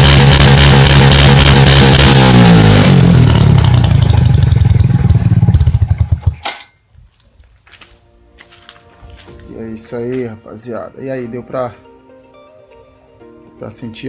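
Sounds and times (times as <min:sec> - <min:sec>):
moped engine revving: 0:00.0 - 0:06.5.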